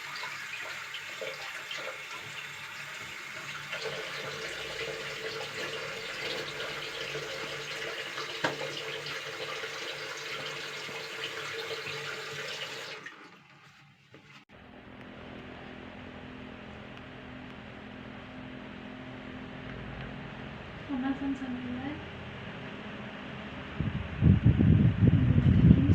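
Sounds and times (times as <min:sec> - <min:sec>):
tap water running into sink: 0:00.0 - 0:14.4
steady low hum: 0:14.5 - 0:25.9.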